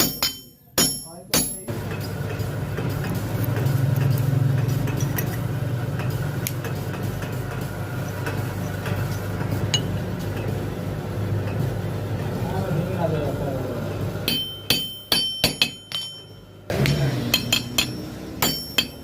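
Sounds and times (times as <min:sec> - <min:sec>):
metallic clinks of tools on metal: 0:00.0 - 0:02.4, 0:14.3 - 0:19.0.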